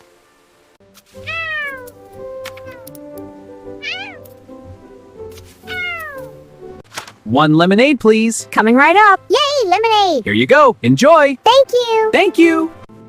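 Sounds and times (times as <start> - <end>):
light background music: 0.0 - 13.0
cat meowing: 1.2 - 2.0, 2.6 - 3.0, 3.8 - 4.3, 5.6 - 6.3.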